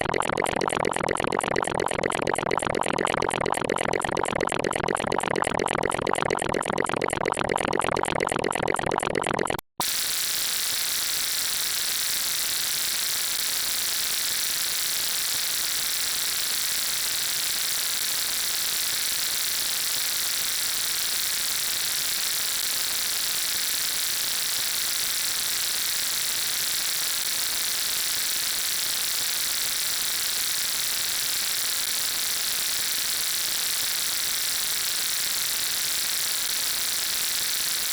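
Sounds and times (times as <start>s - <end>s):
rapidly pulsing electronic noise: 0.0s - 18.0s.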